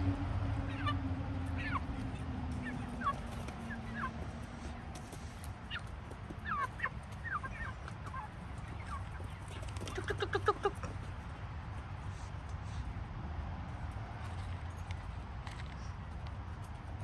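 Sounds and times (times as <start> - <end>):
low steady hum: 0.0 - 5.4
chickens peeping and clucking: 0.0 - 12.9.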